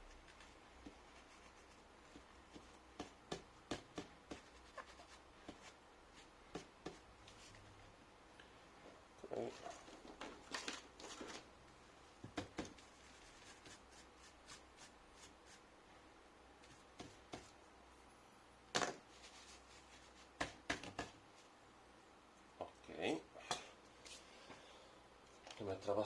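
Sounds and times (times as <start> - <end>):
hands handling laptop parts: 9.5 - 11.5.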